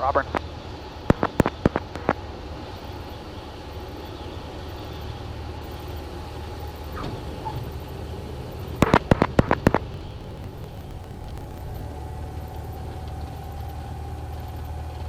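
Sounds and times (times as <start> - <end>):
sharp clicks: 9.9 - 12.0.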